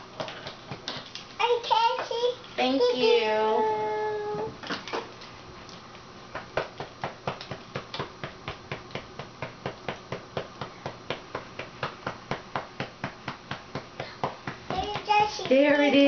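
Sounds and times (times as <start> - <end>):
hand patting a doll: 6.3 - 15.8.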